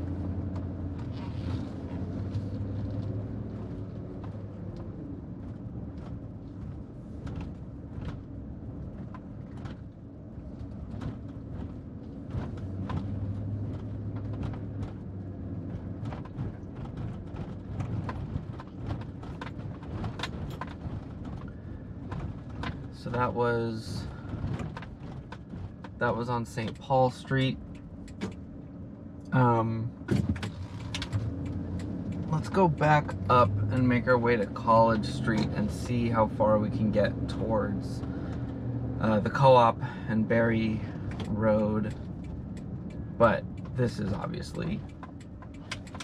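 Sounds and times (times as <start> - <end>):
car engine running: 0.0 - 46.0
tyre and road noise: 0.0 - 46.0
small clicks and knocks: 10.6 - 22.9, 26.6 - 28.5, 30.1 - 33.3, 41.0 - 46.0.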